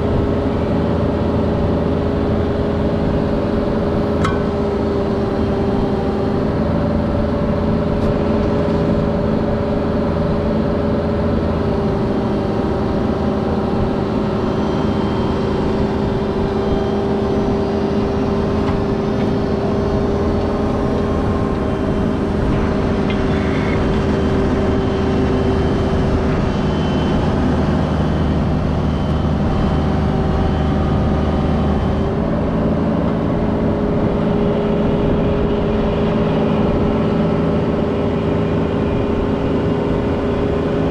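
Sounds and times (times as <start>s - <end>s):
diesel engine running: 0.0s - 40.9s.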